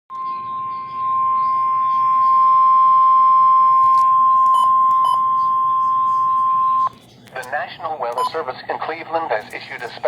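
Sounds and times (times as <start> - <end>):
steady warning alarm tone: 0.1 - 6.9.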